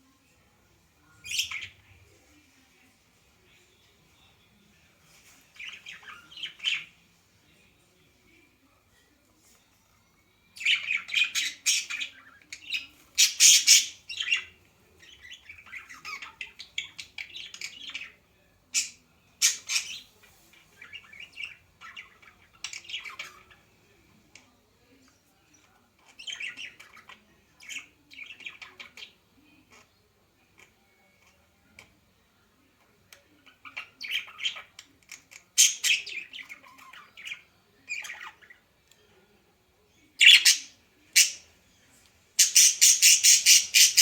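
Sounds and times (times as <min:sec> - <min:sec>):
bird chirping and squawking: 0:10.6 - 0:14.5, 0:40.2 - 0:41.4, 0:42.4 - 0:44.0.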